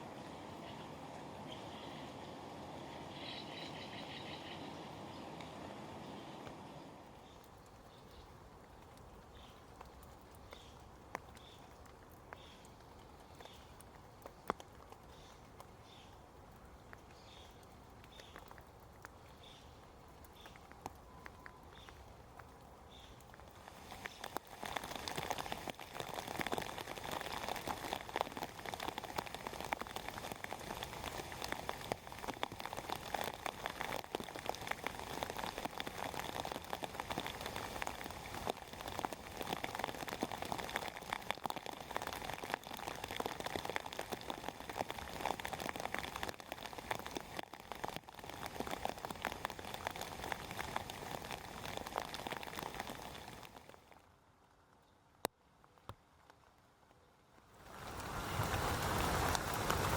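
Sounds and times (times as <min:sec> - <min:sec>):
steady rain falling: 0:00.0 - 0:59.9.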